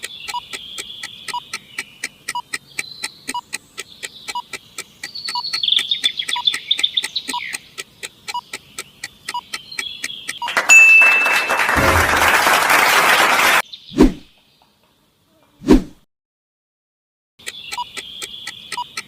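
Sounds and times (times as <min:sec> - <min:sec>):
birds chirping and trilling: 0:00.0 - 0:10.5, 0:17.4 - 0:19.0
countdown timer ticking: 0:00.0 - 0:12.4.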